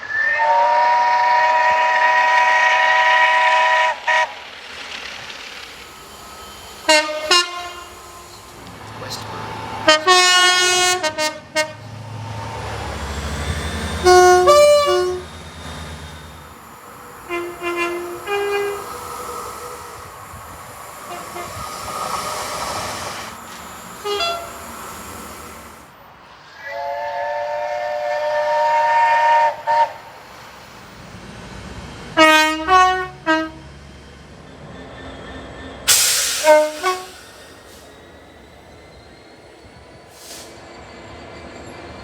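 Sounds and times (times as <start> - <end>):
passing train noise: 0.0 - 42.0
loud hiss: 0.1 - 32.2, 35.9 - 40.8
train horn blasts: 0.2 - 4.4, 6.8 - 9.2, 9.8 - 12.0, 13.8 - 16.5, 17.2 - 19.4, 21.0 - 21.7, 24.0 - 24.8, 26.6 - 30.1, 32.2 - 33.7, 35.9 - 37.2.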